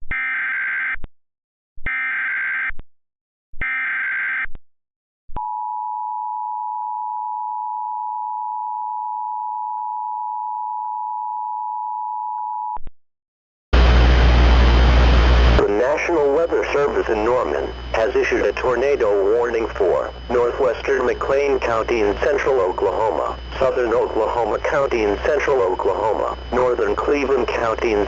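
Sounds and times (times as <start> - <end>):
warbling digital data bursts: 15.6 - 28.0.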